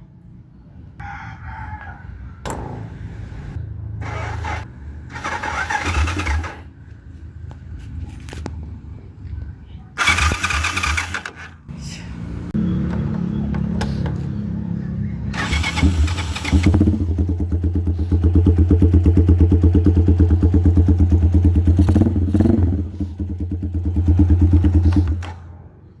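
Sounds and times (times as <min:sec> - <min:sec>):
motorcycle engine running: 0:12.4 - 0:25.6.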